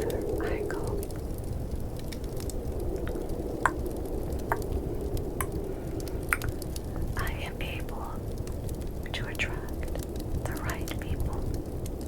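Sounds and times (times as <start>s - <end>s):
fireplace crackles: 0.0s - 12.0s
snowstorm hiss: 0.0s - 12.0s
tongue clicks: 6.3s - 6.6s.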